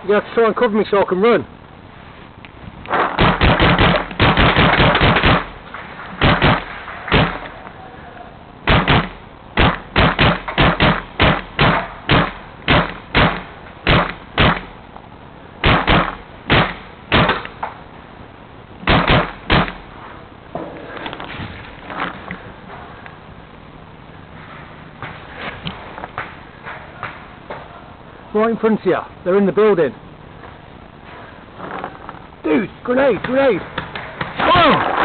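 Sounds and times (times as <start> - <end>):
paintball marker firing: 3.1 - 5.6, 6.2 - 7.5, 8.7 - 14.7, 15.6 - 17.6, 18.9 - 19.8.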